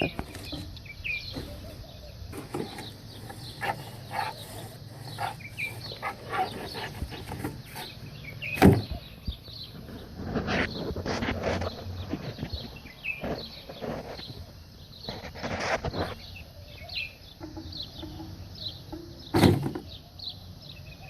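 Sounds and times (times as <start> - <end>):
short bird calls: 0.0 - 9.3.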